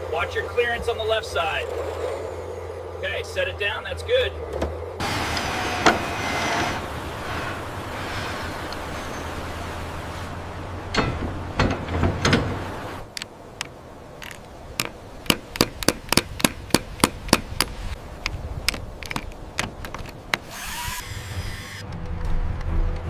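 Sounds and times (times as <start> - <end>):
heavy knocks: 10.9 - 12.8
low rumble: 21.1 - 23.0.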